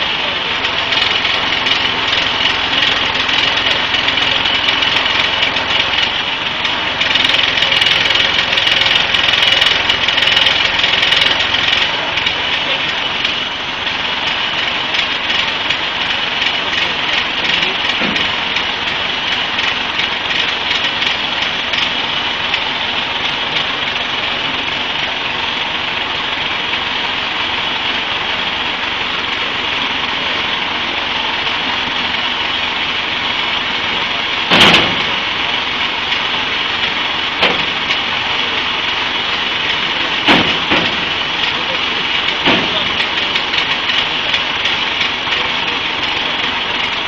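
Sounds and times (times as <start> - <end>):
vehicle engine idling: 0.0 - 47.0
loud bang: 34.4 - 35.3, 40.2 - 41.2.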